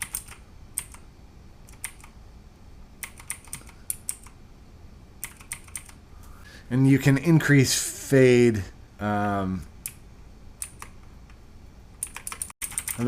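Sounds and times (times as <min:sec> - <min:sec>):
clicky mechanical keyboard keys: 0:00.0 - 0:01.0, 0:01.7 - 0:02.2, 0:03.0 - 0:04.4, 0:05.2 - 0:06.0, 0:10.6 - 0:11.4, 0:12.0 - 0:13.0.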